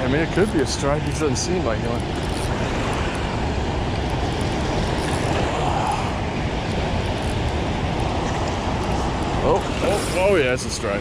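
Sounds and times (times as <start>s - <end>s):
water rushing through spillway: 0.0s - 11.0s.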